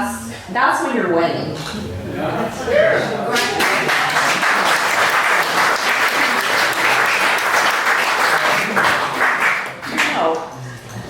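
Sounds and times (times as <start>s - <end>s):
audience applauding: 3.2s - 10.4s.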